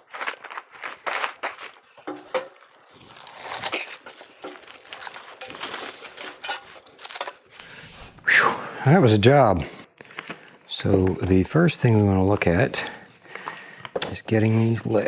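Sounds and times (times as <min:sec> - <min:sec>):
packaging crinkling and rustling: 0:00.0 - 0:08.2.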